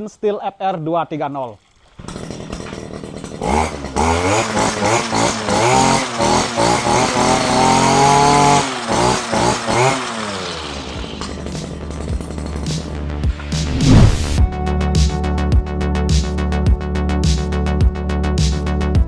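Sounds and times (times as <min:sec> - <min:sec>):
brushcutter engine revving: 0:02.0 - 0:12.4.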